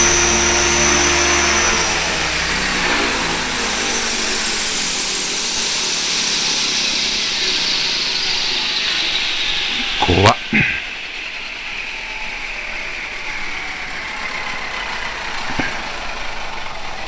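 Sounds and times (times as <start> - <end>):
model helicopter motor whine: 0.0 - 17.0
rotor whirring: 0.0 - 17.0.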